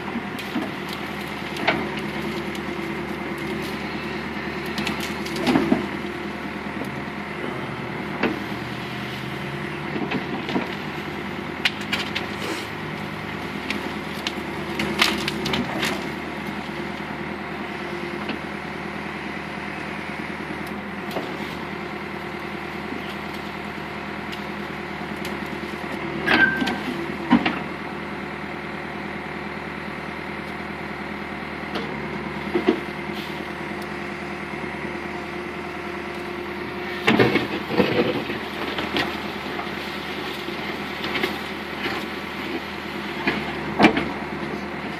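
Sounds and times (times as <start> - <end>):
branches cracking and snapping: 0.0 - 7.1, 8.2 - 17.2, 20.6 - 27.7, 36.0 - 44.9
backhoe engine running: 0.0 - 44.9.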